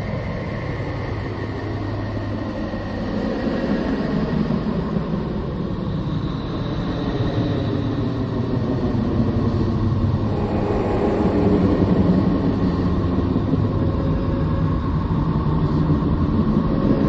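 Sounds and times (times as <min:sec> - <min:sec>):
low rumbling drone: 0:00.0 - 0:17.0.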